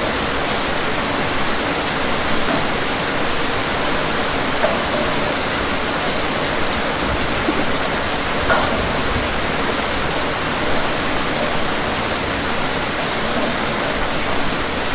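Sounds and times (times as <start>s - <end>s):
steady rain falling: 0.0s - 14.9s
faint water drops: 4.6s - 11.8s.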